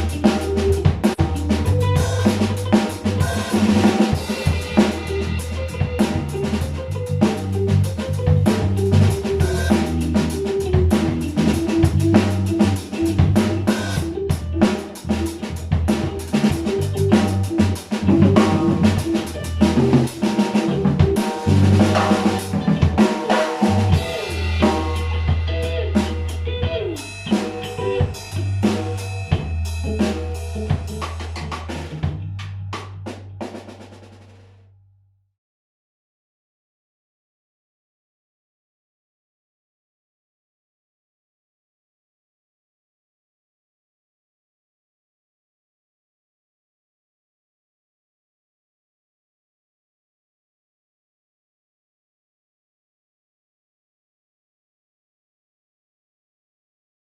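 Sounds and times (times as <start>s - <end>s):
music with drums and bass: 0.0s - 34.5s.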